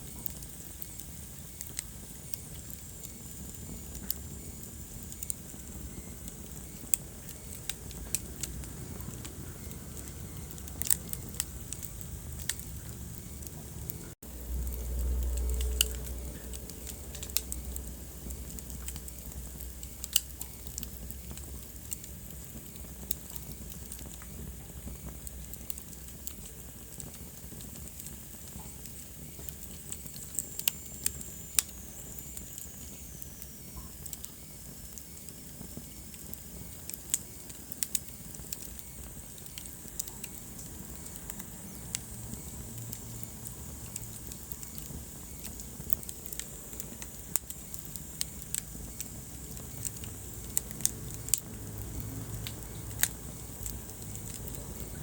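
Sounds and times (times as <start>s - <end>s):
wood fire crackling and popping: 0.0s - 55.0s
low steady rumble: 3.3s - 30.4s.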